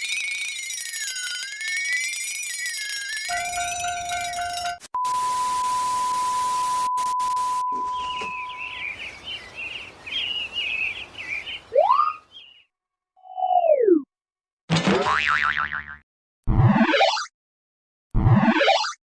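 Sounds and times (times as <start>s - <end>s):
steady beep tone: 3.3s - 8.8s
birds chirping: 7.7s - 12.7s
cartoon whistle: 11.8s - 12.2s.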